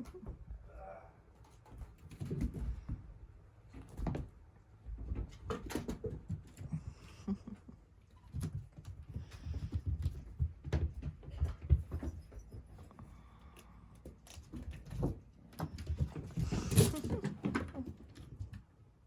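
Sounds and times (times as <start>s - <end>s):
cats scuffling with soft thumps: 1.6s - 19.0s.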